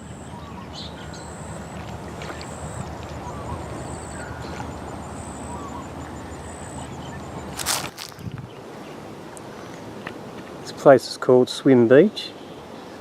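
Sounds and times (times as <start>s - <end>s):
steady low rumble: 0.0s - 9.0s.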